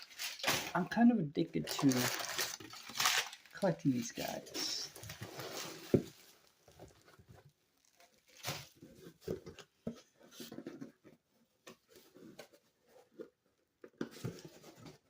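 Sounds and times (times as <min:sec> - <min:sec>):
parcel rustling and scraping: 0:01.6 - 0:13.4.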